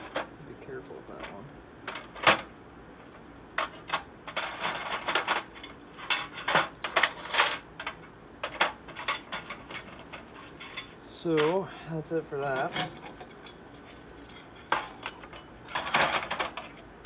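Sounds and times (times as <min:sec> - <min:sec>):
metal hand tools clinking: 0:12.4 - 0:16.9.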